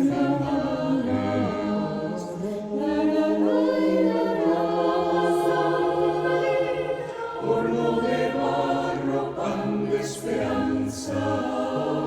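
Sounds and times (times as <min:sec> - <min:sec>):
mixed choir singing a cappella: 0:00.0 - 0:12.0.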